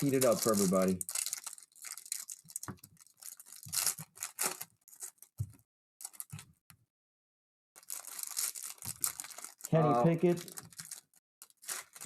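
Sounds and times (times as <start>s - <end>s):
foil wrappers tearing and crinkling: 0.0s - 5.3s, 6.0s - 6.4s, 7.8s - 9.8s, 10.4s - 12.0s.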